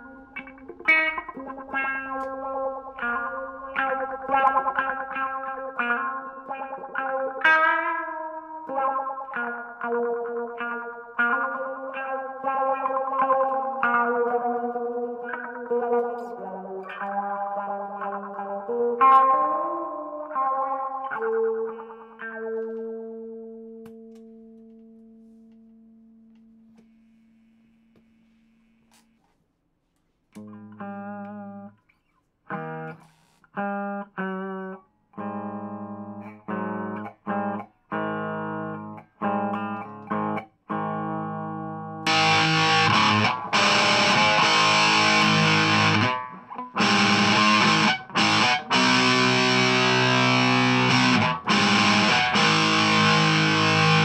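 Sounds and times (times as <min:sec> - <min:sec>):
electric guitar chords: 0:00.0 - 0:26.7, 0:30.4 - 0:31.8, 0:32.5 - 0:33.0, 0:33.6 - 0:54.0
overdriven electric guitar chords: 0:00.0 - 0:26.9, 0:30.4 - 0:31.8, 0:32.5 - 0:33.0, 0:33.6 - 0:54.0.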